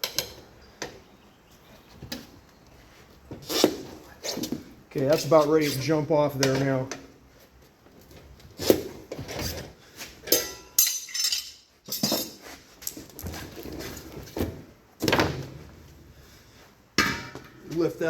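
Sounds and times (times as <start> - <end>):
tire irons clinking on wheel rim: 10.2 - 13.2.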